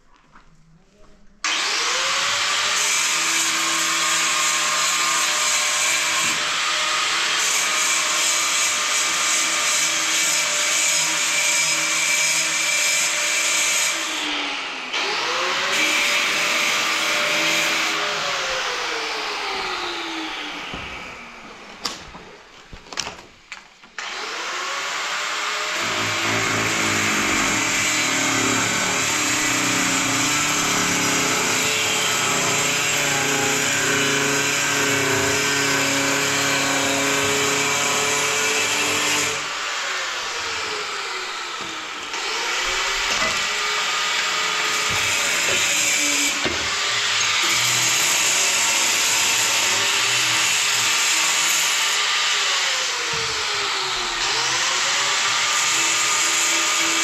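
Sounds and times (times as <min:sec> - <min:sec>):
electric power tool whining: 0:23.9 - 0:57.0.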